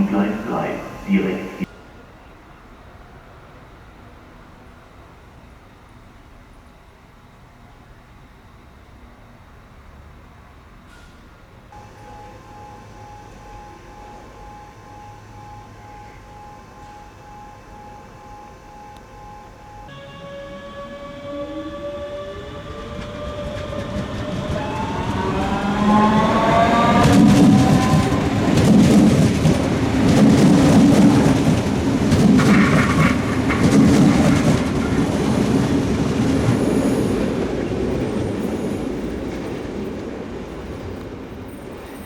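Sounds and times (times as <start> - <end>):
electric train motors whining: 0.0 - 1.7, 11.8 - 39.6
train wheels clattering on rails: 19.9 - 42.0.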